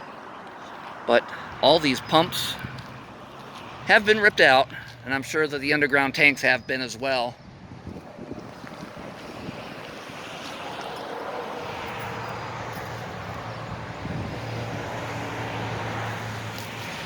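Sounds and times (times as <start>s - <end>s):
tyre hiss of passing traffic: 0.2s - 5.1s, 8.7s - 17.0s.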